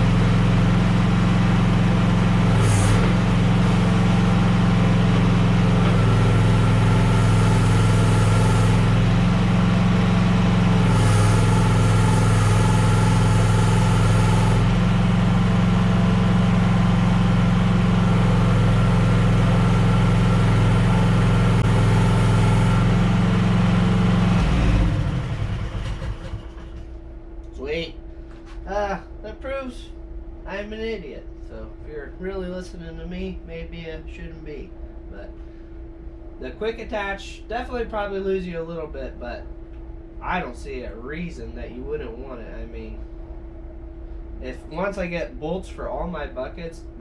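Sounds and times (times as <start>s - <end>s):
gasoline engine running: 0.0s - 29.8s.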